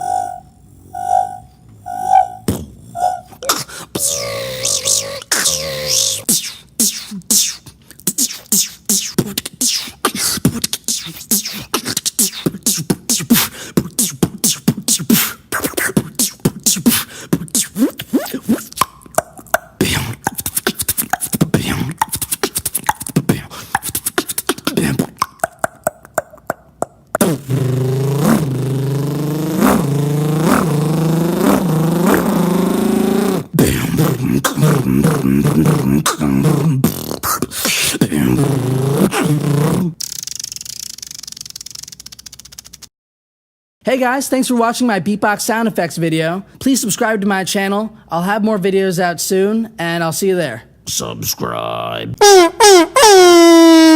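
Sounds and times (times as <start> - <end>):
buzzing vocal tone: 0.0 - 26.5, 27.2 - 41.0
beatboxer mouth clicks and hits: 3.3 - 42.9.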